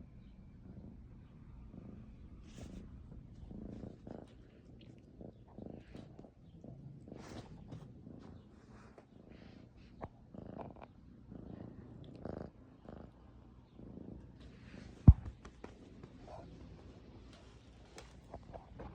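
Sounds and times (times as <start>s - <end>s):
kitten purring: 0.0s - 18.9s.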